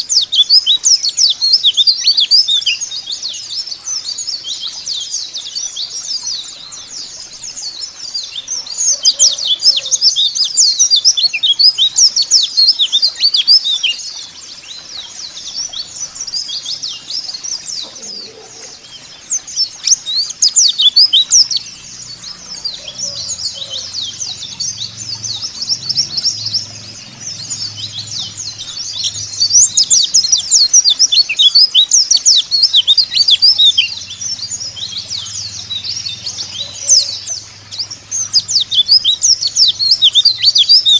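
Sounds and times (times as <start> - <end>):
small birds chirping and twittering: 0.0 - 40.9.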